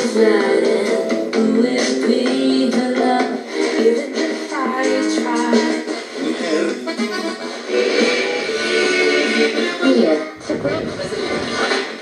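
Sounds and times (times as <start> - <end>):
music through small speaker: 0.0 - 12.0.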